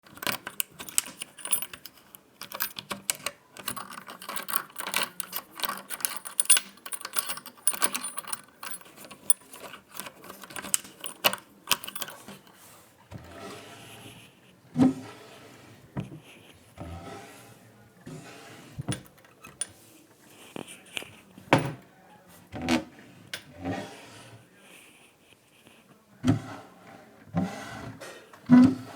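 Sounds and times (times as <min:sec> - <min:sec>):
metal keys jangling: 0:00.0 - 0:12.5.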